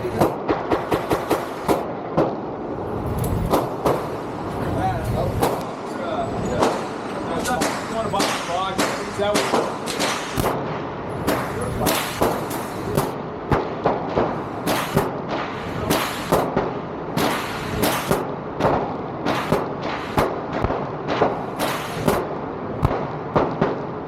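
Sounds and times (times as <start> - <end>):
gunshots: 0.0 - 2.6, 3.3 - 4.4, 5.2 - 5.9, 6.5 - 24.0.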